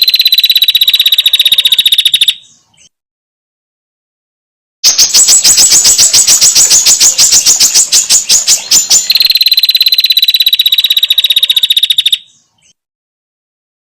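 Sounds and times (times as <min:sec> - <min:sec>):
bird sharp ticking call: 0:00.0 - 0:02.6, 0:04.8 - 0:12.8
bird high trill: 0:00.0 - 0:02.7, 0:04.8 - 0:12.5.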